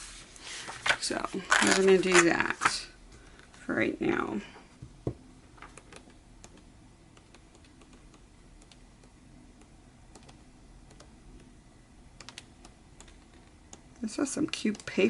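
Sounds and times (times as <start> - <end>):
paper and craft supplies handled: 0.0 - 2.8.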